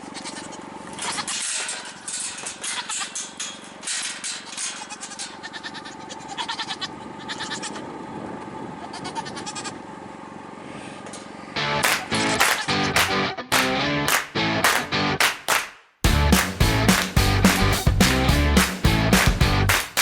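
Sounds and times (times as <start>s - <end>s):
faint bleat: 0.0s - 1.4s, 4.7s - 7.9s, 8.8s - 9.8s
animals scuffing and rustling: 0.0s - 9.6s.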